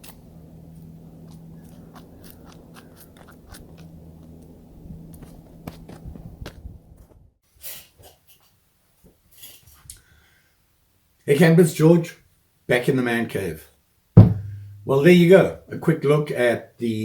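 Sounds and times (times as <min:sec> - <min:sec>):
steady low hum: 0:00.0 - 0:06.9, 0:14.2 - 0:15.5.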